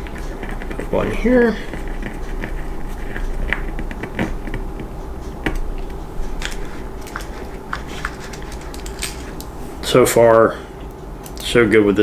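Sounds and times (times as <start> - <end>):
plastic parts clicking: 5.4 - 9.5.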